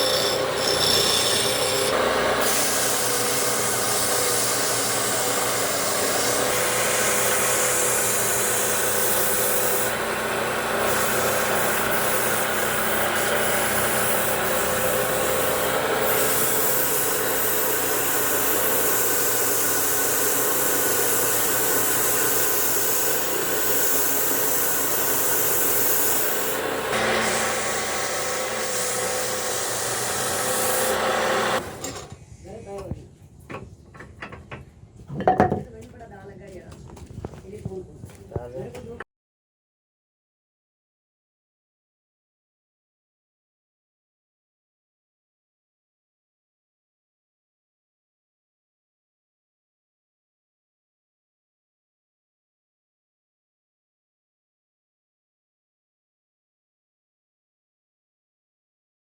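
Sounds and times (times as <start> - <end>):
tool scraping spinning wood: 0.0 - 32.1
wood lathe motor running: 0.0 - 32.1.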